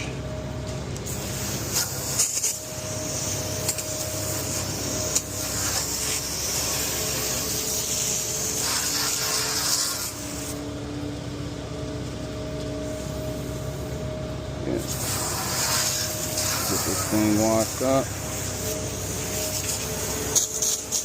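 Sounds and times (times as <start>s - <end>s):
water hose spraying hard: 1.1s - 10.6s, 14.8s - 21.0s
truck engine humming: 10.1s - 15.2s, 16.0s - 21.0s.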